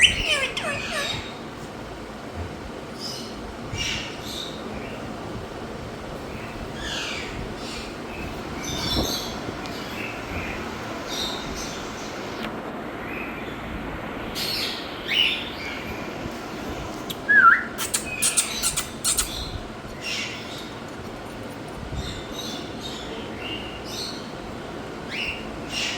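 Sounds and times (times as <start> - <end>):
parakeet chirp: 0.0 - 1.4, 17.1 - 20.8
background hiss: 14.0 - 20.9
parrot whistle: 17.3 - 19.3.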